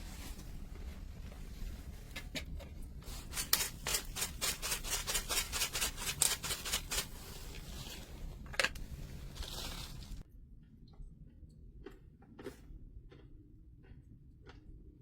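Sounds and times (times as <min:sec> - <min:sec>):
quick scraping strokes: 0:03.1 - 0:08.1.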